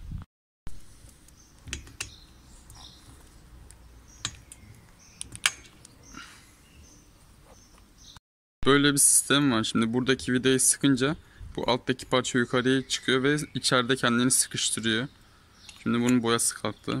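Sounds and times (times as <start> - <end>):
small clicks and knocks: 1.0 - 6.0.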